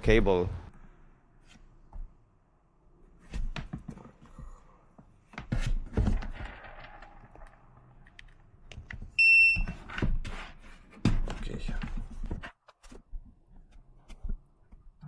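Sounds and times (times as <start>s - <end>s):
high electronic beep: 9.2s - 9.7s.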